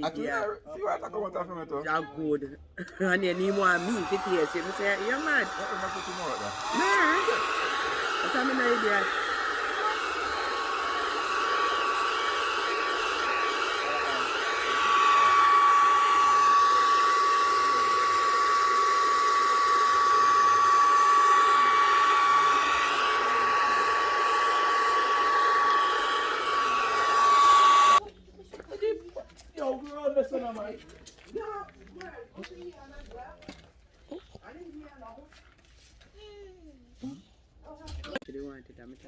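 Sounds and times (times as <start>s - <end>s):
hair dryer blowing: 3.2s - 28.0s.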